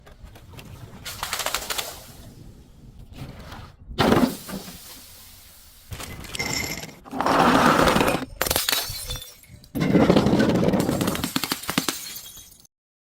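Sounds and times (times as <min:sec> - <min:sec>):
glass bottle shattering: 0:08.3 - 0:12.7.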